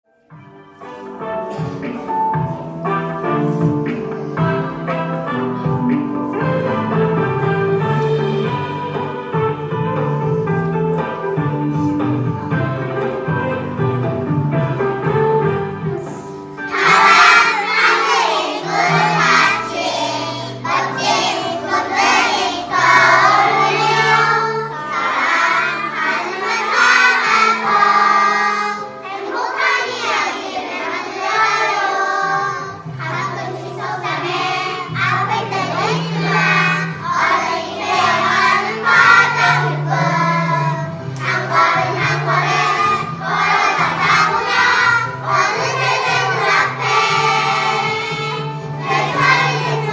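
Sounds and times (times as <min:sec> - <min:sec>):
backing music accompaniment: 0:00.1 - 0:49.9
children singing in unison: 0:16.0 - 0:49.9.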